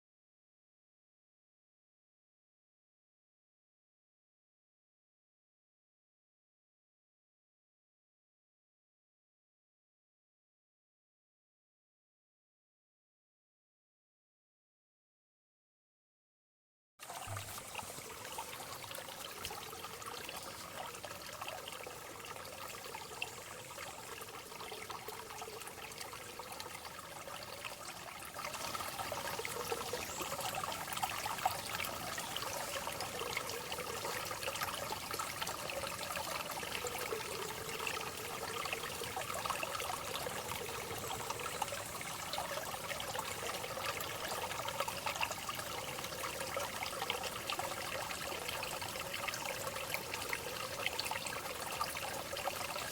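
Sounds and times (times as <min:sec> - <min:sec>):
water trickling: 0:17.0 - 0:52.9.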